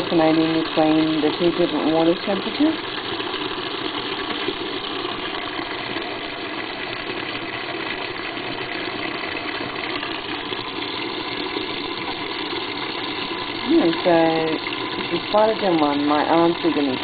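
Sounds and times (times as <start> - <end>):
water pouring into washing machine: 0.0 - 17.0.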